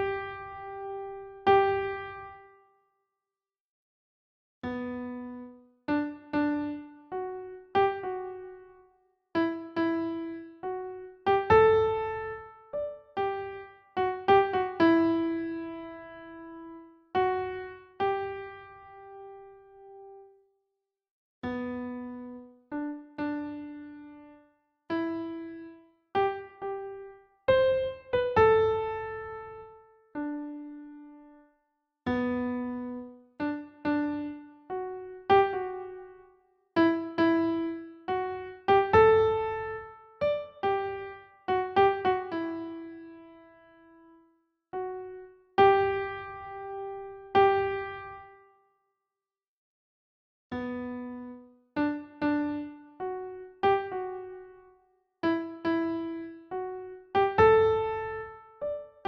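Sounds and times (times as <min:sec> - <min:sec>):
gentle piano melody: 0:00.0 - 0:02.6, 0:04.6 - 0:20.4, 0:21.4 - 0:31.5, 0:32.1 - 0:48.5, 0:50.5 - 0:59.0.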